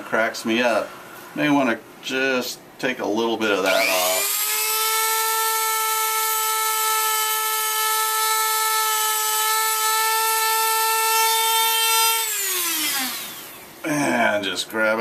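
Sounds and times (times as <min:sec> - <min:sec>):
rotary tool whining: 0:03.6 - 0:13.8.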